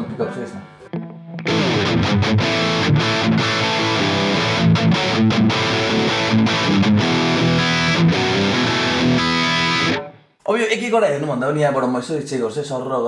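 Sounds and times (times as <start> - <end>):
distorted electric guitar riff: 0.0 - 10.4.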